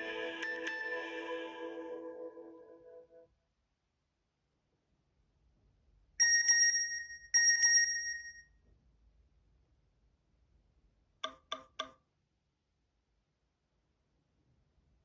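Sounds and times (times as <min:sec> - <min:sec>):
bell-like chimes: 0:00.0 - 0:03.0, 0:06.2 - 0:08.4.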